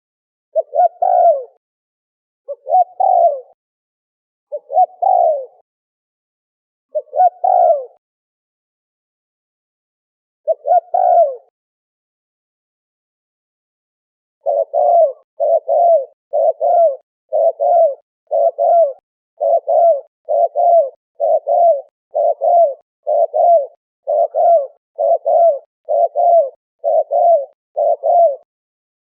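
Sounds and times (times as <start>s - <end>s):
dove cooing: 0.5s - 1.6s, 2.5s - 3.6s, 4.5s - 5.6s, 6.9s - 8.0s, 10.4s - 11.5s, 14.4s - 28.5s.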